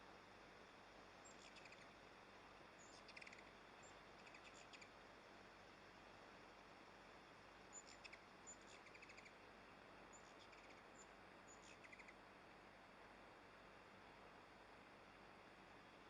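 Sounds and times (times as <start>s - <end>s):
faint bird chirps: 1.2s - 2.0s, 2.8s - 5.0s, 7.7s - 12.2s.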